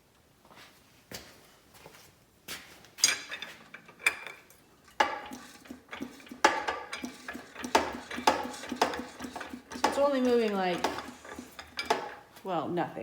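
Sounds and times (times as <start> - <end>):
metal tools striking metal: 5.9 - 12.2.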